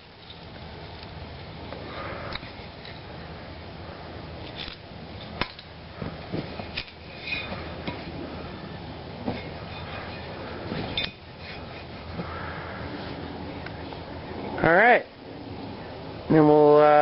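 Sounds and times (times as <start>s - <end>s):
metal tools and bolts clinking: 6.5s - 8.1s, 9.3s - 11.9s.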